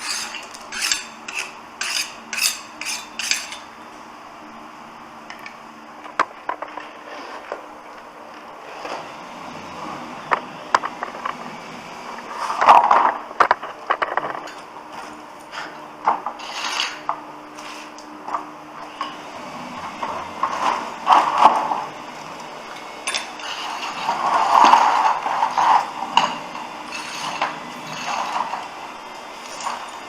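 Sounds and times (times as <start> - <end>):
hand tools clicking and tapping on tile: 0.0 - 3.6
tool scraping on tile: 0.0 - 3.7, 6.6 - 7.6, 12.2 - 18.0, 23.1 - 28.8.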